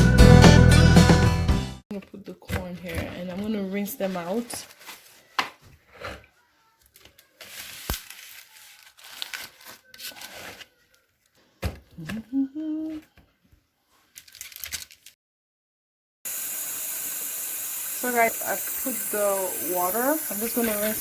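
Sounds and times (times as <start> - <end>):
dry corn husks tearing: 7.4 - 10.8.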